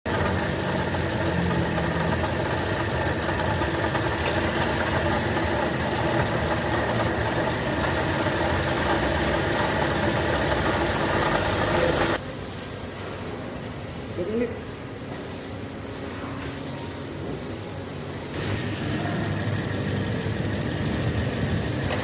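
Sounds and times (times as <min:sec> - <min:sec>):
car engine running rough: 0:00.0 - 0:12.2, 0:18.4 - 0:22.0.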